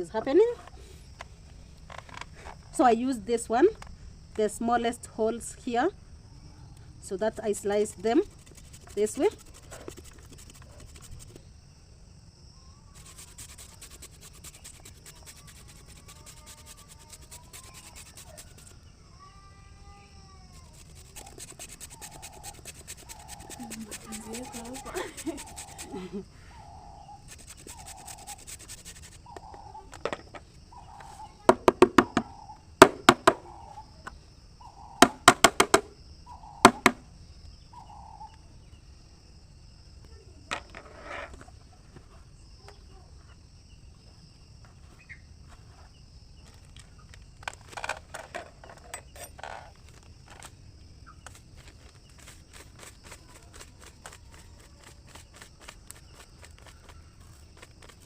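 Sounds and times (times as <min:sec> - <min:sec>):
high-pitched insect drone: 0:05.8 - 0:11.5, 0:12.4 - 0:38.8
carrot scraping on grater: 0:07.8 - 0:11.4, 0:13.0 - 0:18.7, 0:20.6 - 0:26.0, 0:27.2 - 0:29.3.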